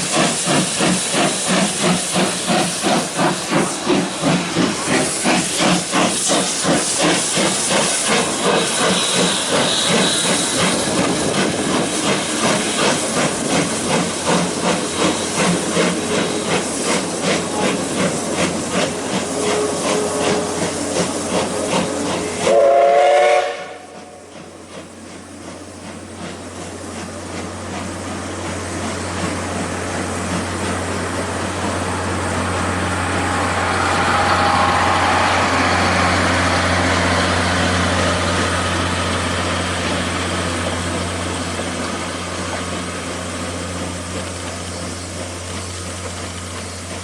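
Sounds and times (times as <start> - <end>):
steam hissing: 0.0 - 47.0
steam locomotive exhaust chuffs: 0.0 - 47.0
train whistle blast: 8.9 - 10.8, 19.3 - 20.8, 22.1 - 24.3.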